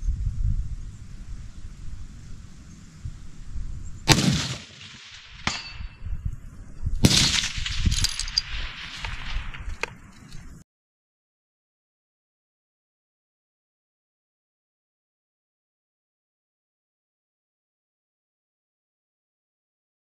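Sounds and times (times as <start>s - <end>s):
rifle shots: 4.1s - 6.0s, 7.0s - 9.6s
metallic clinks: 7.6s - 8.7s.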